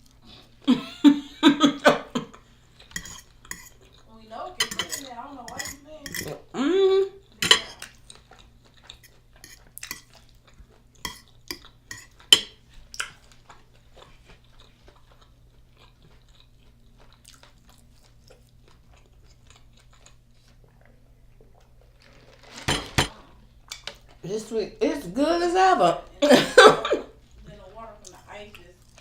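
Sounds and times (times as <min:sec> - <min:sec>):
faint low hum: 0:00.0 - 0:29.0
person chewing food: 0:02.3 - 0:06.5, 0:07.1 - 0:22.4.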